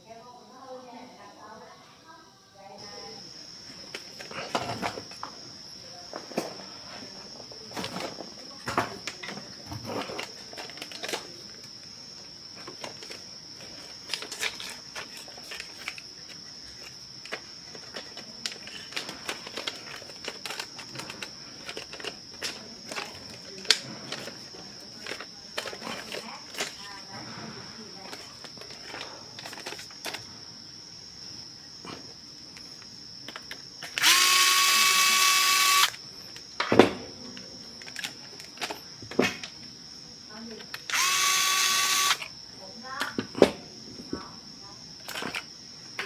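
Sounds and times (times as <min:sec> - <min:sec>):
toy parts clicking and knocking: 0:10.0 - 0:11.7, 0:12.6 - 0:27.0, 0:28.1 - 0:30.2, 0:33.3 - 0:36.5, 0:37.8 - 0:39.6, 0:40.6 - 0:42.3, 0:45.0 - 0:46.0.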